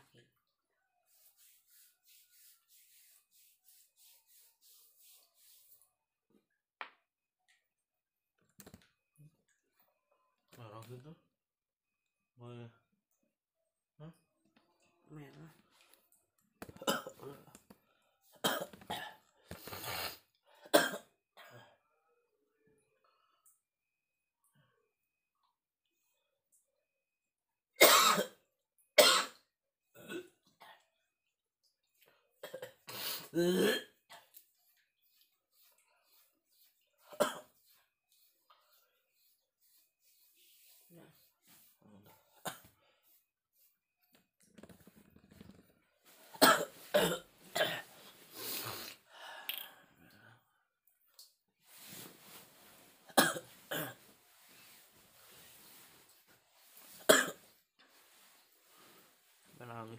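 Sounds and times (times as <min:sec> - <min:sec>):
man coughing: 0:20.8 - 0:21.0, 0:46.4 - 0:47.9, 0:53.2 - 0:54.0, 0:57.1 - 0:57.4
man clearing his throat: 0:32.5 - 0:34.0.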